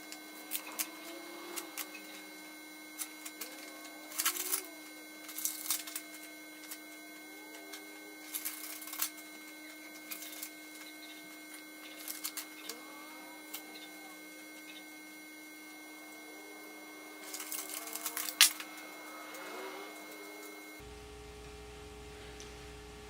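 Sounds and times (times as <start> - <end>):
steady electrical hum: 0.0 - 23.0
paper rustling: 17.2 - 18.7.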